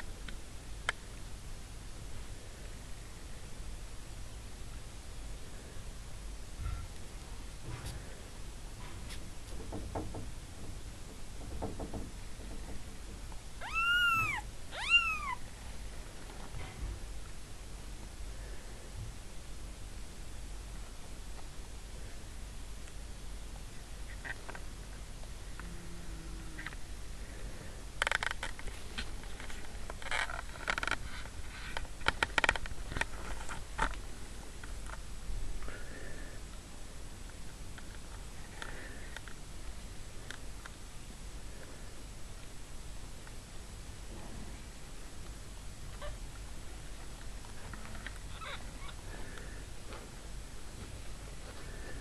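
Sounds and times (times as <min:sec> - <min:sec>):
kitten mewing: 0:13.6 - 0:15.4, 0:48.3 - 0:49.0.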